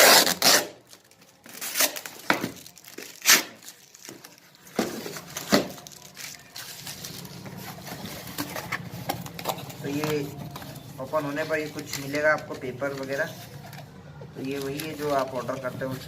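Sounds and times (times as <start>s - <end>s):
packing tape ripping: 0.0s - 10.6s
wrapping crinkling: 0.0s - 16.0s.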